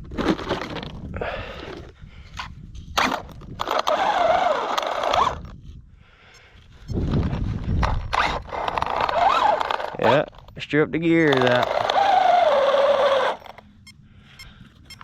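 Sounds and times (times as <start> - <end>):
gears scraping and grinding: 3.0 - 5.6, 7.1 - 10.5, 11.1 - 13.7
electric motor whining: 3.6 - 5.5, 8.1 - 10.2, 11.3 - 13.6.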